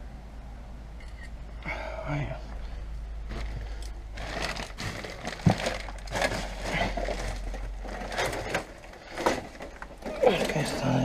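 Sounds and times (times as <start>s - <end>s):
footsteps crunching over rubble: 3.2s - 11.0s.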